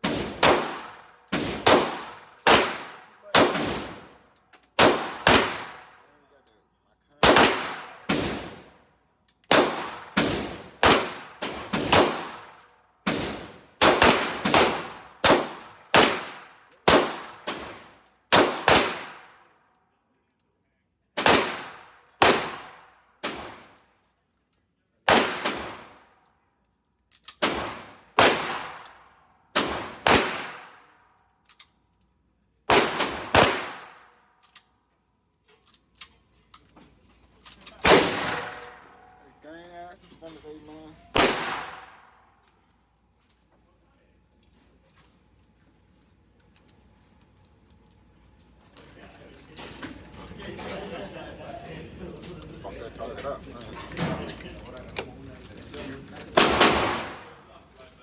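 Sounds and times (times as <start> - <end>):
gunshots echoing: 0.0 - 4.1, 4.8 - 6.0, 7.2 - 8.8, 9.5 - 19.4, 21.2 - 23.7, 25.1 - 26.0, 27.4 - 30.9, 32.7 - 34.1, 37.8 - 39.2, 41.2 - 42.2, 56.3 - 57.5.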